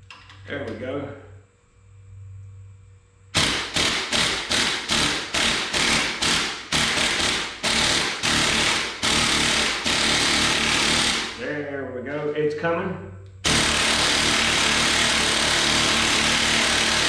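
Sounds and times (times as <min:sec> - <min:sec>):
impact wrench hammering: 0:03.4 - 0:11.4, 0:13.4 - 0:17.0.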